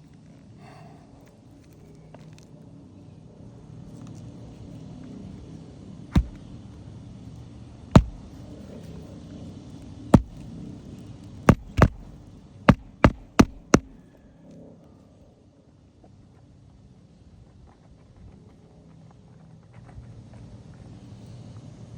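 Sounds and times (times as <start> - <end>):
hammer nailing shingles: 6.2 - 6.4, 8.0 - 8.4, 10.2 - 10.4, 11.5 - 14.0.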